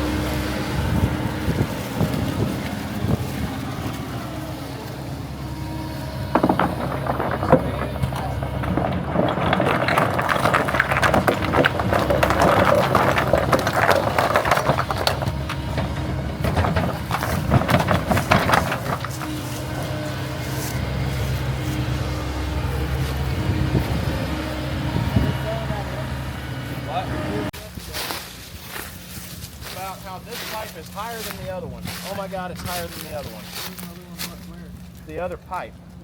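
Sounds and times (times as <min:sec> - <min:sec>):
heavy equipment engine running: 0:00.0 - 0:36.0
clattering: 0:04.9 - 0:24.1.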